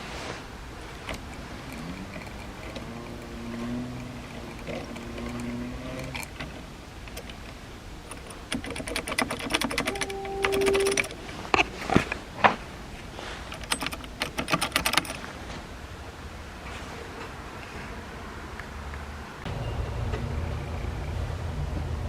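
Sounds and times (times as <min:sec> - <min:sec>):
rapid clicking: 0:00.9 - 0:10.0.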